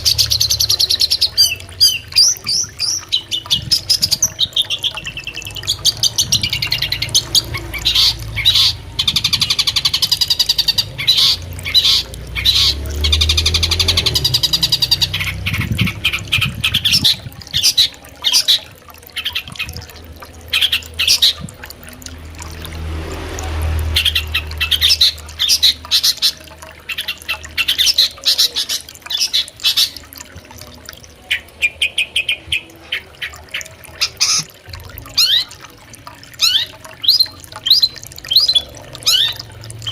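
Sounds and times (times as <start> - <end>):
flowing river: 0.0 - 39.9
bird harsh chattering calls: 5.6 - 13.4.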